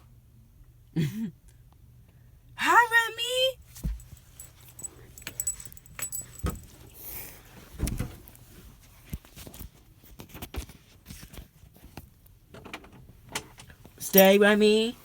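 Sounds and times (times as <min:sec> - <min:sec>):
light jingling and clinking: 0:03.7 - 0:07.4, 0:14.0 - 0:14.9.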